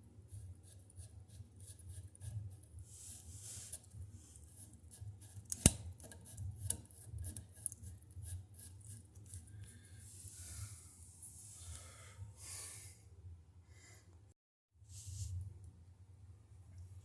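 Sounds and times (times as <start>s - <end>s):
scraping and rubbing handling noise: 2.9s - 7.8s.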